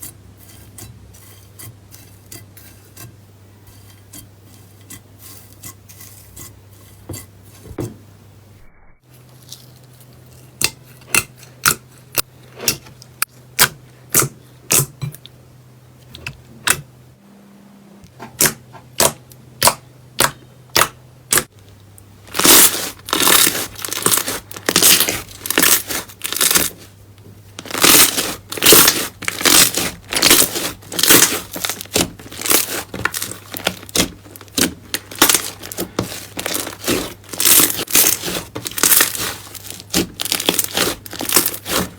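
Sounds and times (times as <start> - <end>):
slime popping and crackling: 22.3 - 26.8, 27.6 - 41.9.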